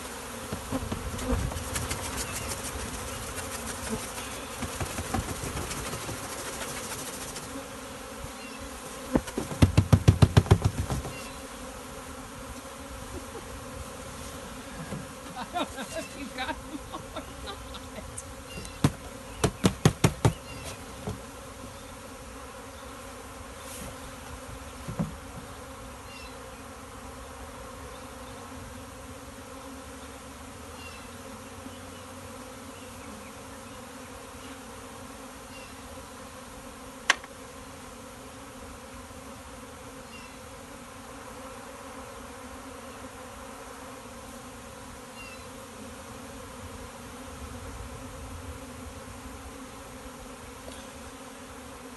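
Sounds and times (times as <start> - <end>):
bee swarm buzzing: 0.0 - 51.9
sharp loud knocks: 9.1 - 11.2, 18.8 - 21.2.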